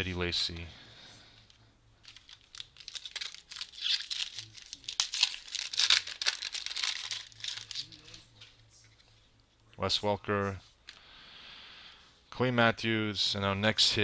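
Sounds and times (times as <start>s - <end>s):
wrapper tearing and crinkling: 2.0s - 8.2s.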